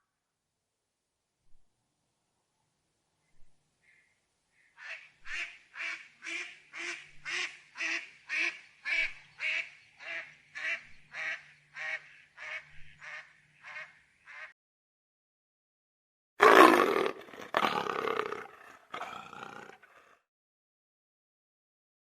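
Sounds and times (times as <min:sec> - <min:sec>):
duck quacking: 0:04.8 - 0:14.5.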